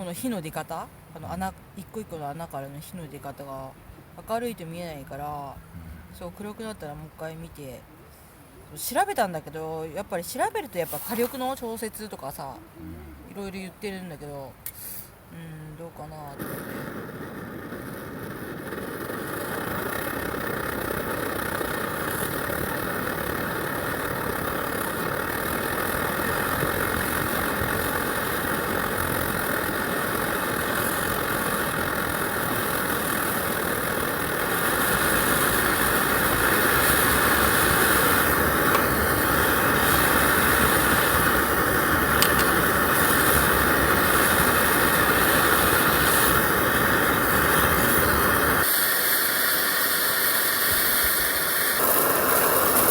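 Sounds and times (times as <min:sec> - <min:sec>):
camp stove burner roaring: 0:16.0 - 0:52.9.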